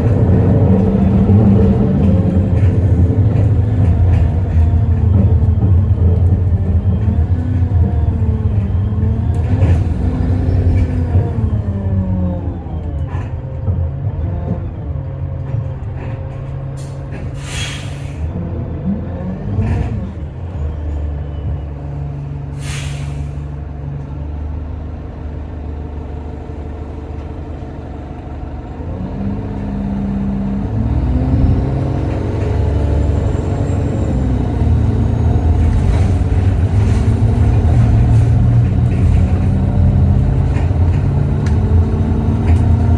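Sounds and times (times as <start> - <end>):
bus engine running: 0.0 - 42.9
air brake hisses: 16.8 - 18.3, 22.6 - 23.6.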